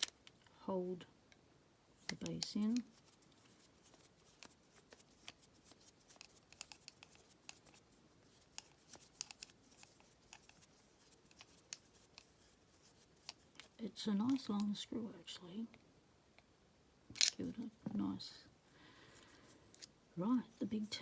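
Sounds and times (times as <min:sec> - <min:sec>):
small metallic clicks and scratches: 0:02.0 - 0:14.8, 0:17.1 - 0:17.7, 0:19.2 - 0:19.9.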